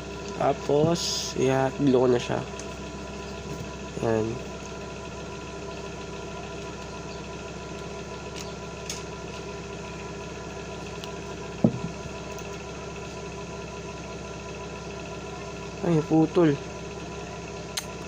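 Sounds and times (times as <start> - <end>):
machine hum: 0.0 - 18.0
short knock: 11.6 - 12.0.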